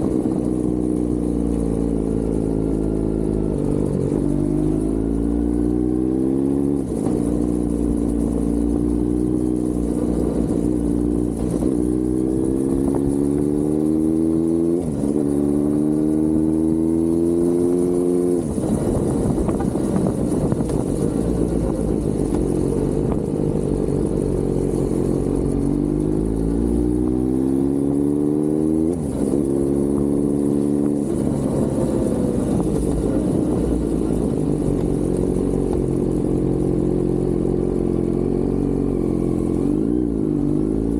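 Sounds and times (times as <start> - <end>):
motorcycle engine accelerating: 0.0 - 40.9.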